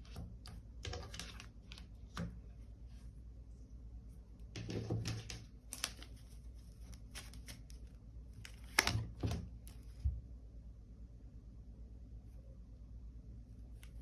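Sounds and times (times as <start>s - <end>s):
cards being shuffled: 4.6s - 9.9s.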